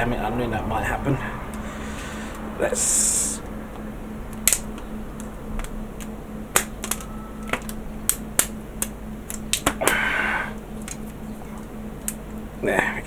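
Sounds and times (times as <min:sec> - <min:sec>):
clicks and taps of small hard items: 0:05.2 - 0:09.8.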